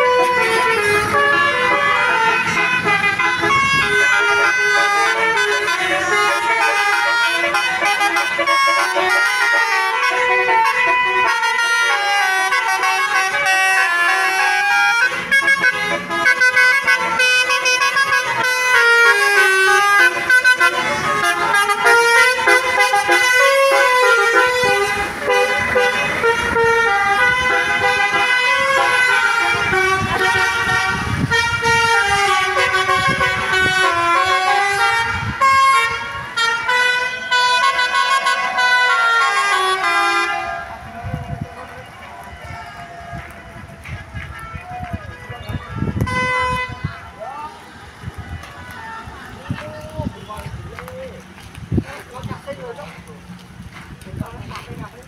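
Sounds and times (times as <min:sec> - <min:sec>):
musical bus horn tune: 0:00.0 - 0:41.2, 0:45.2 - 0:47.0.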